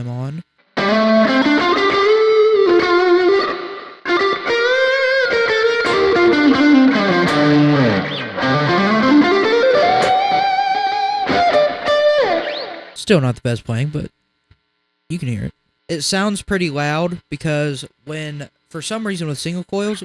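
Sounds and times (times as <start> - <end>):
overdriven electric guitar lead: 0.8 - 13.0.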